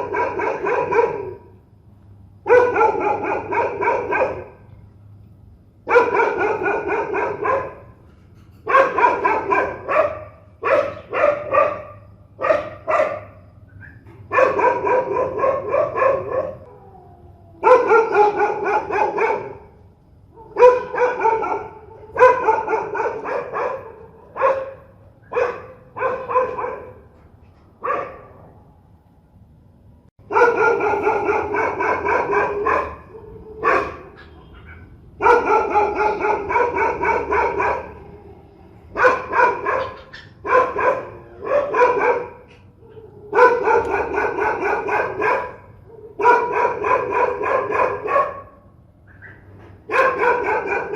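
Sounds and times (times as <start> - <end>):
dog barking aggressively: 0.0 - 1.6, 2.4 - 4.7, 5.8 - 8.0, 8.6 - 13.6, 14.2 - 16.7, 17.6 - 27.2, 27.8 - 28.5, 30.2 - 38.2, 38.8 - 50.9.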